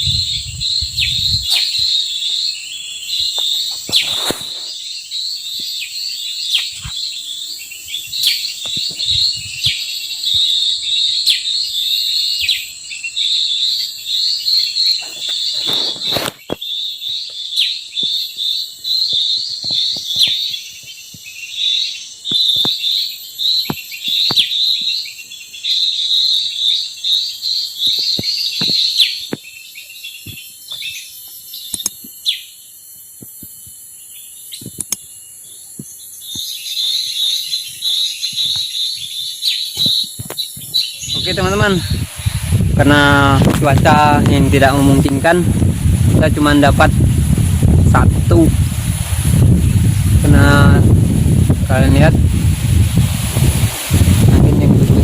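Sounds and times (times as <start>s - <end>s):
high-pitched insect drone: 0.0s - 55.0s
small birds chirping: 0.0s - 55.0s
rustling bursts: 3.7s - 4.8s, 39.8s - 55.0s.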